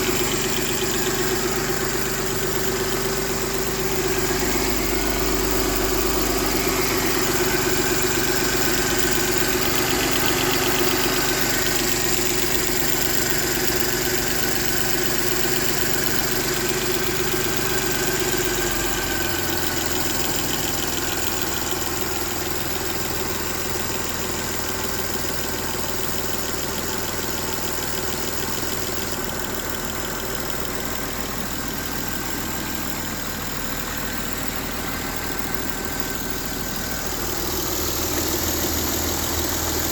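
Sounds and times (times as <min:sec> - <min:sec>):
car engine idling: 0:00.0 - 0:39.9
engine ticking: 0:00.0 - 0:39.9.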